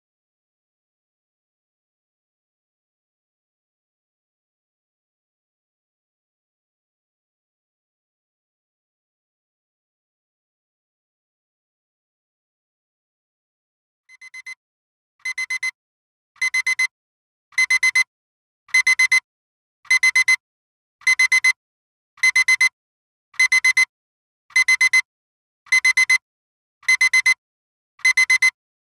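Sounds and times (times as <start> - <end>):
electronic timer alarm beeping: 14.1 - 14.6, 15.2 - 15.8, 16.4 - 16.9, 17.6 - 18.1, 18.7 - 19.2, 19.9 - 20.4, 21.0 - 21.6, 22.2 - 22.8, 23.4 - 23.9, 24.5 - 25.1, 25.7 - 26.2, 26.8 - 27.4, 28.0 - 28.6.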